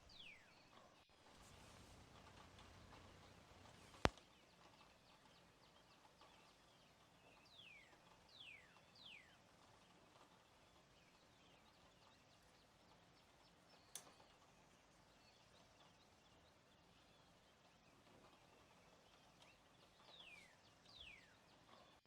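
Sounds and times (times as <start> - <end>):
faint hiss: 1.2 - 4.2.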